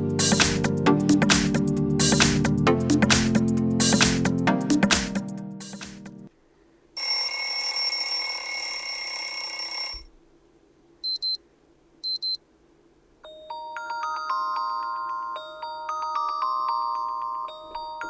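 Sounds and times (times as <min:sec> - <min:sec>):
melody of ringing notes: 0:13.2 - 0:18.0.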